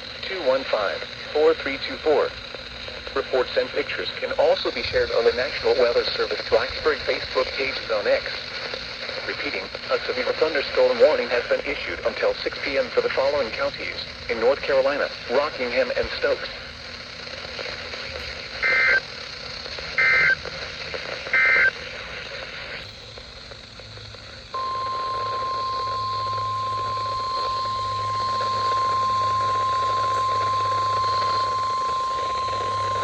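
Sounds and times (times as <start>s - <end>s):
radio hiss: 0.0s - 33.0s
harsh warbling data bursts: 0.3s - 33.0s
steady attention tone: 20.0s - 20.4s, 24.3s - 33.0s.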